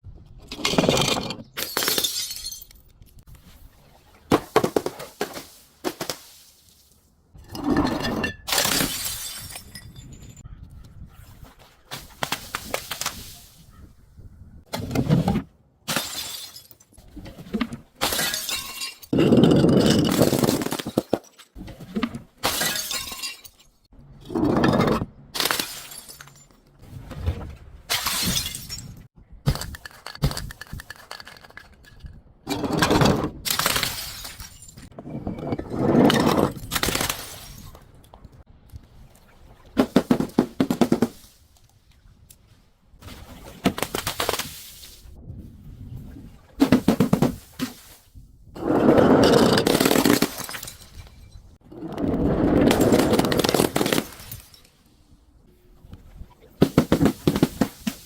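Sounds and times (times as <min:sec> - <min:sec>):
glass bottles shattering: 0:00.6 - 0:03.0, 0:07.6 - 0:10.4, 0:15.9 - 0:17.0, 0:18.0 - 0:21.6, 0:22.4 - 0:23.9, 0:25.4 - 0:26.7, 0:27.9 - 0:30.8, 0:33.5 - 0:37.8, 0:49.2 - 0:51.4, 0:52.7 - 0:54.8.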